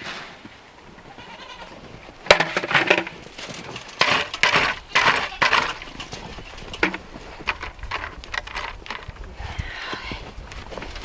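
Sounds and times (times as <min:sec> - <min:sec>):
footsteps crunching through snow: 0:03.0 - 0:08.2, 0:09.2 - 0:11.0.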